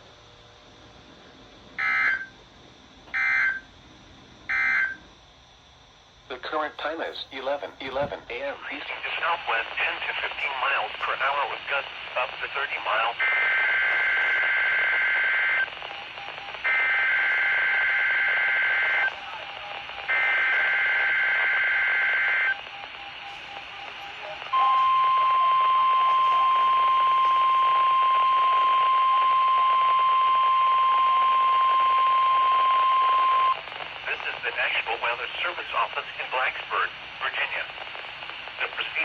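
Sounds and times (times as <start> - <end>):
steady alarm tone: 1.8 - 2.4, 3.0 - 3.8, 4.5 - 5.1, 13.0 - 33.6
radio hiss: 6.3 - 39.0.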